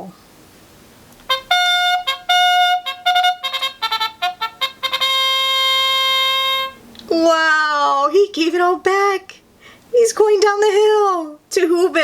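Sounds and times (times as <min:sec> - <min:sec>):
electronic trumpet fanfare: 0:01.2 - 0:06.9.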